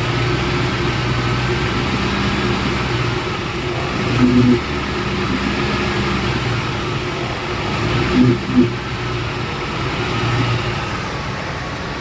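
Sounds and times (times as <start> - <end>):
truck engine running: 0.0 - 12.0.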